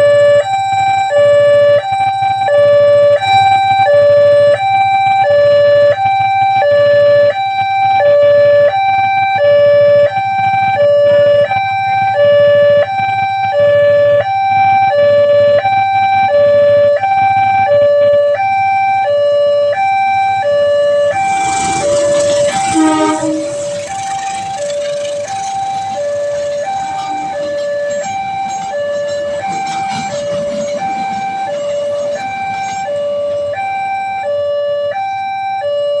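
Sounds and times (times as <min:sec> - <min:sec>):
level crossing two-tone alarm: 0:00.0 - 0:36.0.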